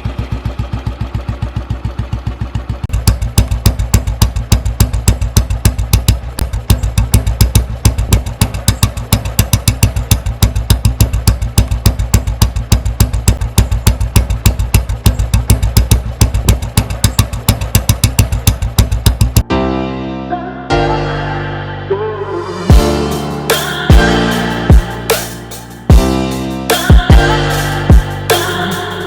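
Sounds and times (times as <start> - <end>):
motorcycle engine idling: 0.0 - 19.5, 22.7 - 29.0.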